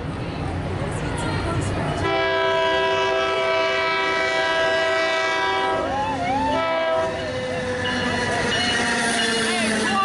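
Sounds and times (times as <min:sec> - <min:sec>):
low rumble of train: 0:00.0 - 0:10.0
train air horn chord: 0:02.0 - 0:05.9, 0:06.6 - 0:07.2.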